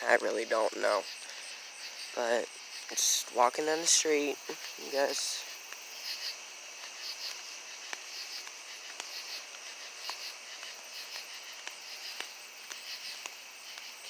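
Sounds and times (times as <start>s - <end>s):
crickets chirping: 0.0s - 14.0s
faint clicks: 6.8s - 14.0s.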